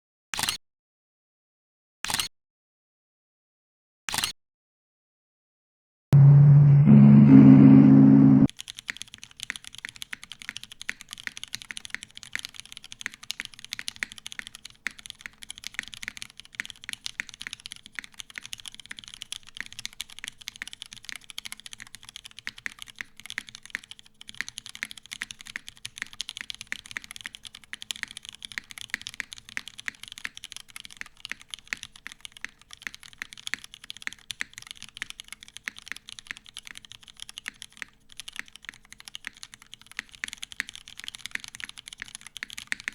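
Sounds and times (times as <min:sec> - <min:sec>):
fast mechanical keyboard typing: 0:08.5 - 0:42.9.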